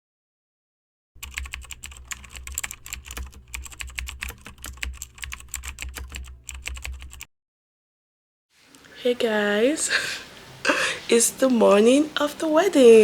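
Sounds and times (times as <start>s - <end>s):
rapid typing-like clicking: 1.2s - 7.3s.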